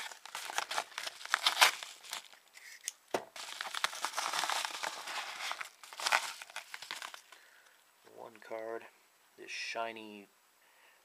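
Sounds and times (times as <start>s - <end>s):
paper and plastic wrapping crinkling: 0.0s - 7.5s.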